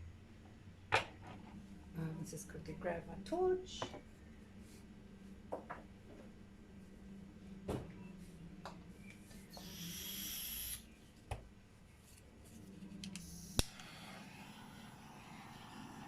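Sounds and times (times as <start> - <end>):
gas torch hiss: 9.6 - 10.8, 13.1 - 16.0
torch ignition click: 13.0 - 13.9.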